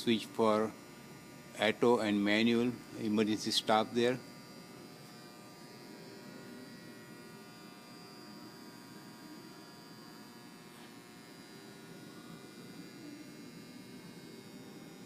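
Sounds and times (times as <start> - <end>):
electric hum and buzz: 0.0 - 15.0.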